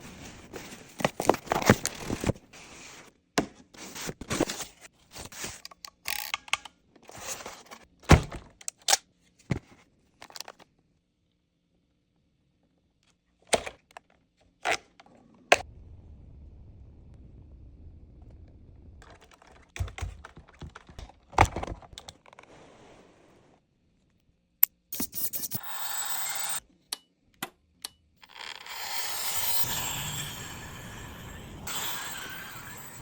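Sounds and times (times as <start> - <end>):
scraping and rustling packaging: 0.0 - 3.1, 3.7 - 5.7, 7.0 - 8.0.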